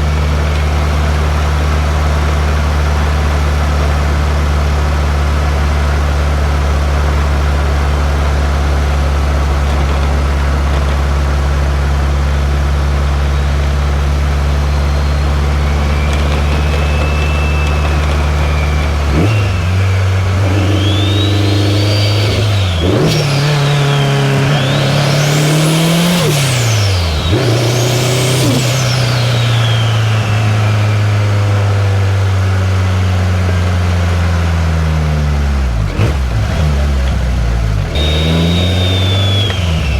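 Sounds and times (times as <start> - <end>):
car engine idling and revving: 0.0 - 39.9
turbo whistle: 13.4 - 32.7, 37.9 - 39.9.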